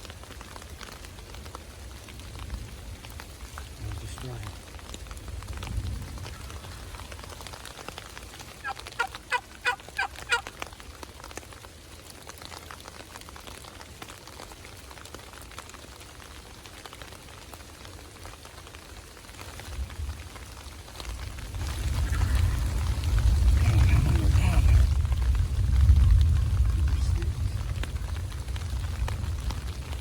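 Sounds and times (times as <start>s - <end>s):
rain hissing: 0.0s - 30.0s
turkey yelps: 8.5s - 10.6s.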